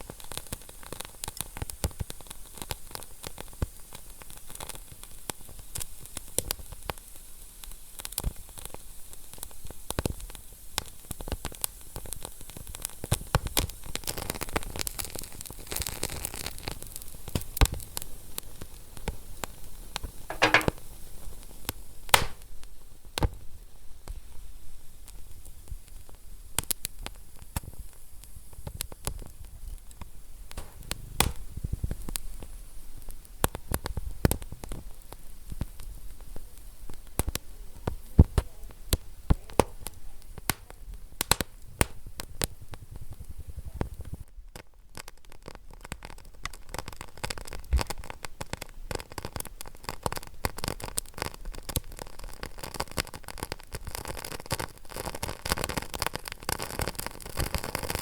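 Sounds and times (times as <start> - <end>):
wood fire crackling: 13.4 - 22.8, 25.9 - 58.0
low rumble of flames: 28.6 - 44.3.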